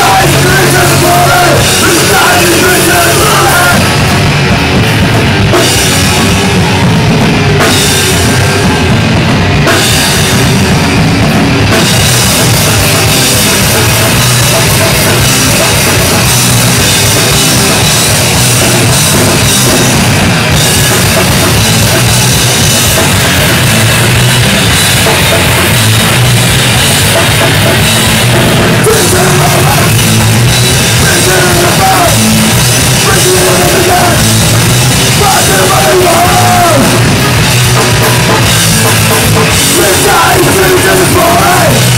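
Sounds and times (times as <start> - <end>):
drum kit: 0.0 - 41.9
punk rock band playing live: 0.0 - 41.9.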